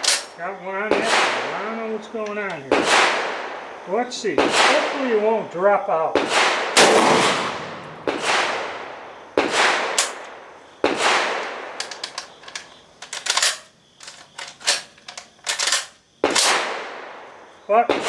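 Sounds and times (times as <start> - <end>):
metallic clicks of gun action: 0.0 - 0.4, 9.9 - 10.3, 11.4 - 16.6
shotgun shots echoing: 0.0 - 5.4, 6.2 - 12.0, 15.6 - 17.3.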